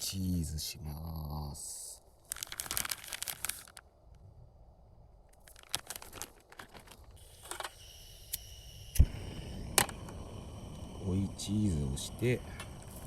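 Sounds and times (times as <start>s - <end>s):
plastic packaging crinkling: 2.2s - 3.9s, 5.4s - 7.2s.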